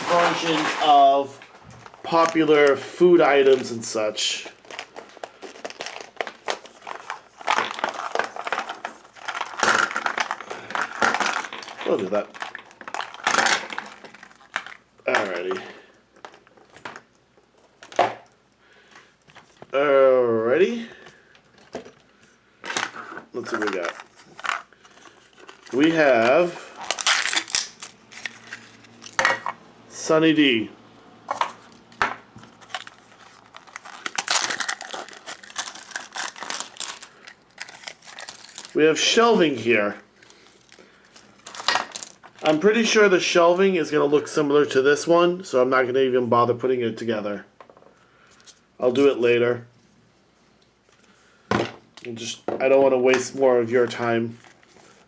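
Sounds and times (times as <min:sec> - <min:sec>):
packaging crinkling: 0:00.0 - 0:18.0, 0:22.8 - 0:29.5, 0:31.3 - 0:39.5, 0:40.1 - 0:42.6, 0:54.3 - 0:55.0.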